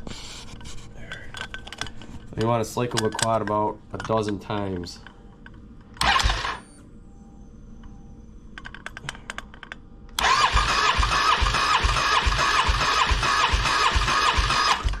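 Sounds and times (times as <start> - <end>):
starter motor cranking engine: 6.0 - 6.6, 10.2 - 15.0.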